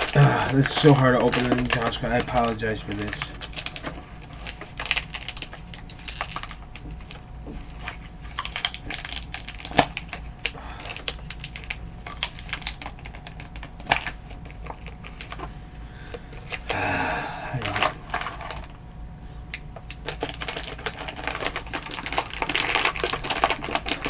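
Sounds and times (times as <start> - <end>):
packaging snapping: 0.0 - 15.5, 16.1 - 18.8, 19.5 - 24.0
packaging rustling and crinkling: 0.0 - 16.7, 17.6 - 18.8, 19.5 - 24.0.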